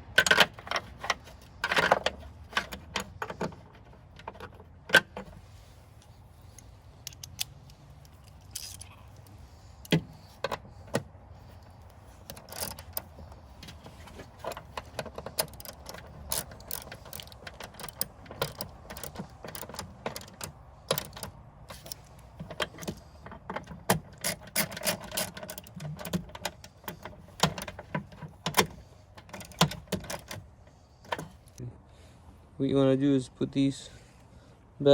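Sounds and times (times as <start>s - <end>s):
metallic clicks of hand tools: 6.0s - 11.0s, 11.6s - 30.4s.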